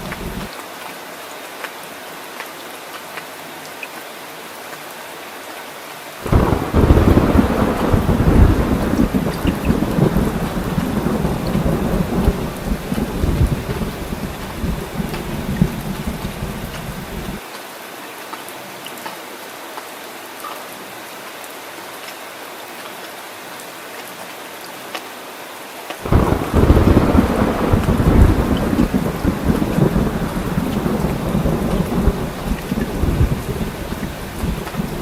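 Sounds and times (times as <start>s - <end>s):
thunder rumbling: 0.0s - 0.5s, 6.2s - 17.4s, 26.0s - 35.0s
heavy rain: 0.0s - 35.0s.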